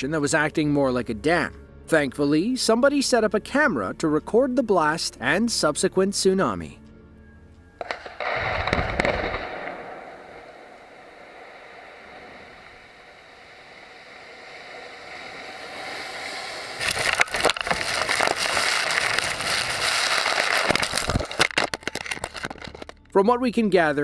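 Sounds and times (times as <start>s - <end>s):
wave crashing and splashing: 9.5s - 21.2s.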